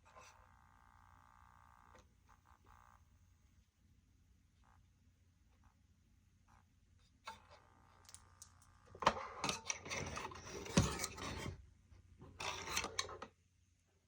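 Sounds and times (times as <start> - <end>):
light electrical buzz: 0.0 - 11.2.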